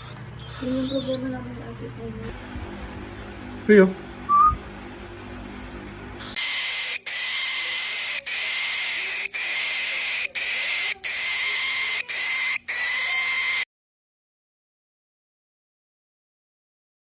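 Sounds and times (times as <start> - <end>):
cockatiels hissing: 0.0 - 1.7, 4.3 - 4.6, 6.2 - 13.6.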